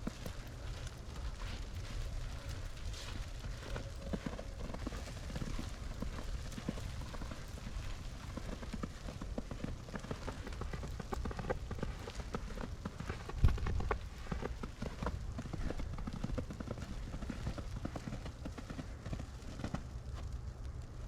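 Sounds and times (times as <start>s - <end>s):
footsteps crunching through snow: 0.0s - 19.4s
steady low rumble: 0.0s - 21.0s.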